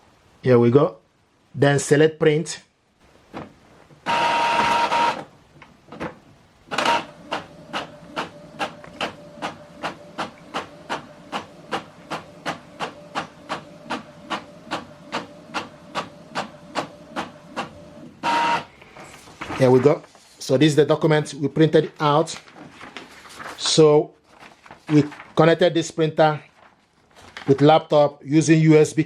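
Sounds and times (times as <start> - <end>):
printer mechanical noise burst: 4.0 - 5.3, 6.7 - 20.0.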